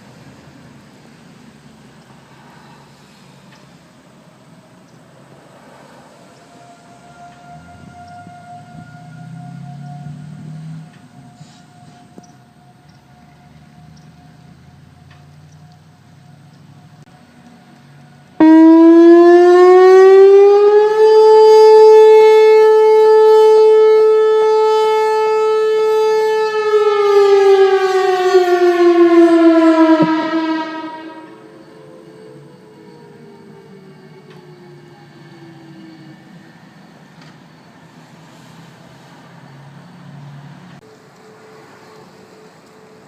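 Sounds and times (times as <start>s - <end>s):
electronic warning siren: 4.3s - 38.2s.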